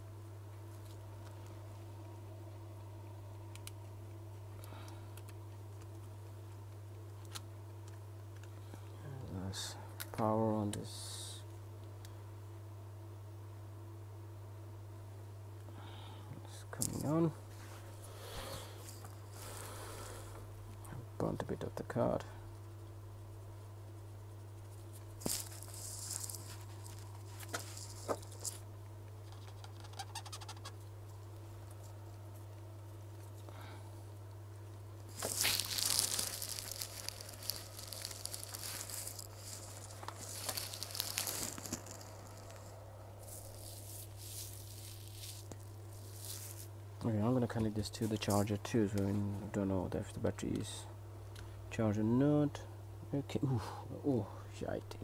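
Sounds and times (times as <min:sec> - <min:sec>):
low electrical hum: 0:00.0 - 0:55.0
small parts clicking: 0:35.1 - 0:46.6
short rustle: 0:35.1 - 0:46.7.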